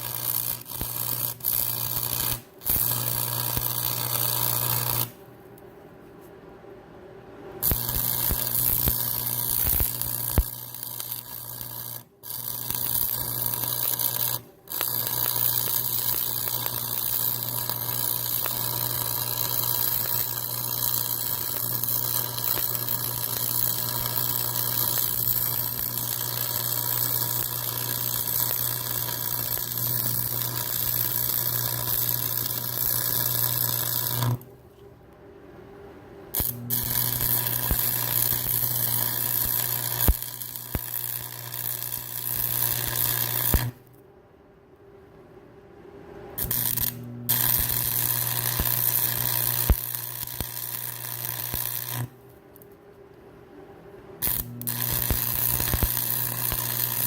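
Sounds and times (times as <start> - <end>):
welding arc crackling: 0.0 - 5.2, 7.6 - 34.5, 36.4 - 43.9, 46.4 - 52.3, 54.2 - 57.0.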